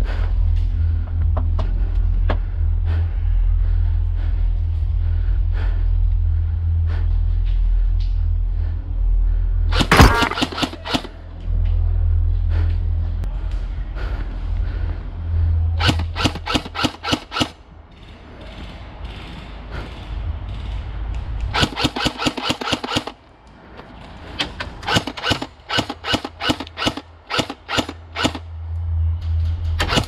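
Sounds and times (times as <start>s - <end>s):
low rumble: 0.0s - 21.8s, 28.0s - 30.0s
airsoft guns firing: 9.8s - 11.2s, 21.6s - 23.2s.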